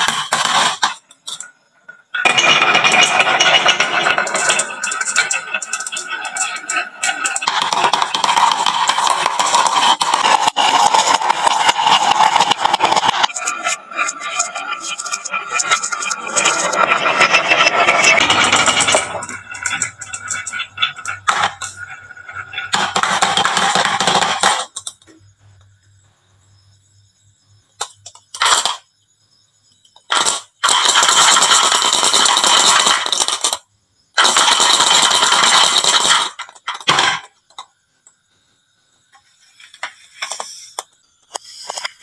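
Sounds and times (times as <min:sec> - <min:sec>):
marbles clicking: 0:00.0 - 0:25.1
marbles rolling down wooden run: 0:00.0 - 0:25.1, 0:30.0 - 0:37.7.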